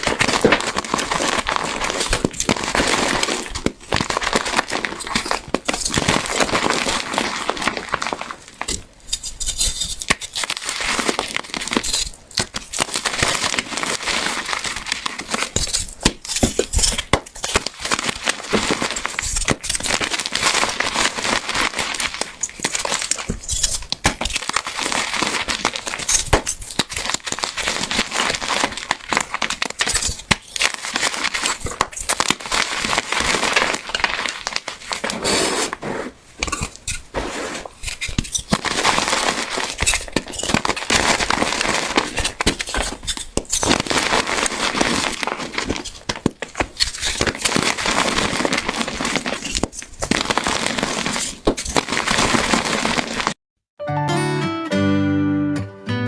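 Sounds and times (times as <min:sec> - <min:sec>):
soap cubes crunching by hand: 0:00.0 - 0:35.4, 0:37.7 - 0:53.4.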